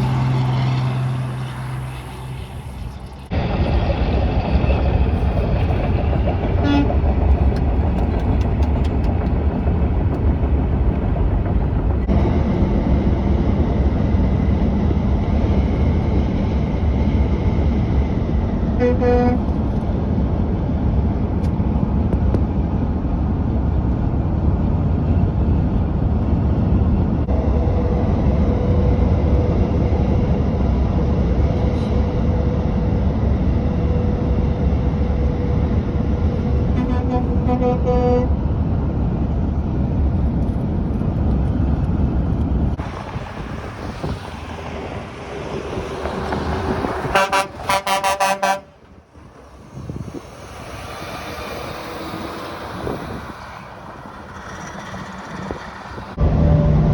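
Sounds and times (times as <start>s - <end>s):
road traffic noise: 0.0s - 56.9s
vehicle horn blast: 6.6s - 6.9s, 18.8s - 19.4s, 36.8s - 38.3s, 47.1s - 48.8s.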